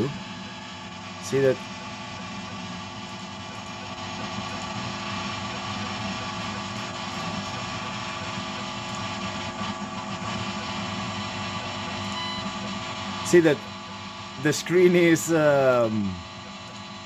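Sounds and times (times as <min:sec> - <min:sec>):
whining interference tones: 0:00.0 - 0:17.0.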